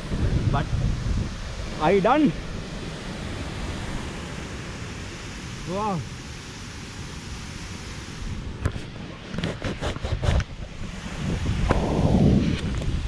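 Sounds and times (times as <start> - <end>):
waterfall rushing: 0.0 - 9.2
wind buffeting microphone: 0.0 - 13.0.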